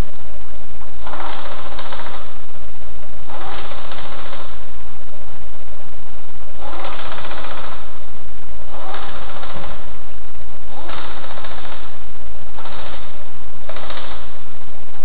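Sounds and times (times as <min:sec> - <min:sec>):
constant low rumble: 0:00.0 - 0:15.0
loud mechanical rattling: 0:00.9 - 0:02.6, 0:03.2 - 0:04.9, 0:06.6 - 0:15.0.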